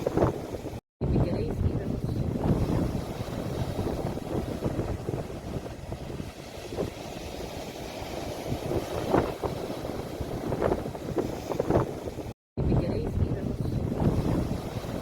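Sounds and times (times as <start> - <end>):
sea waves: 0.0 - 15.0
wind buffeting microphone: 0.0 - 15.0.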